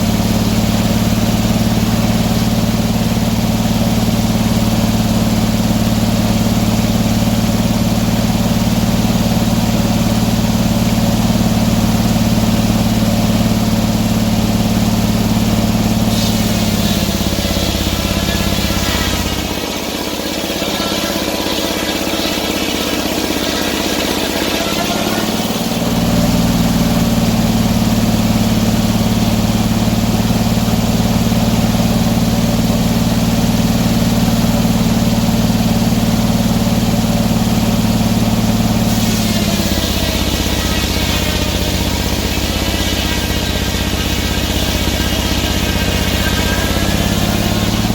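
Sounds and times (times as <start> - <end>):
sawmill engine running: 0.0 - 47.9
high hissing whine of saw blade: 14.6 - 30.4, 36.8 - 47.9.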